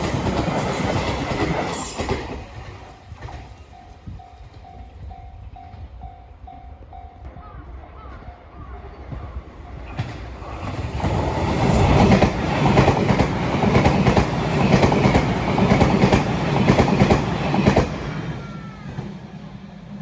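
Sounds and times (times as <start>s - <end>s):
train wheels clattering over rail joints: 0.0s - 3.7s, 9.9s - 18.0s.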